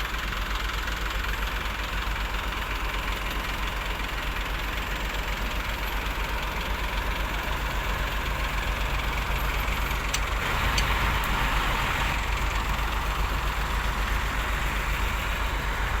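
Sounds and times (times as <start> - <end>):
diesel engine running: 0.0 - 16.0
sharp clicks: 10.0 - 11.4.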